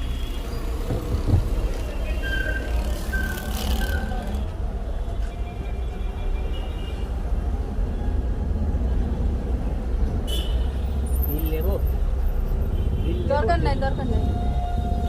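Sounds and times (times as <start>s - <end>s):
car engine and road noise: 0.0s - 15.0s.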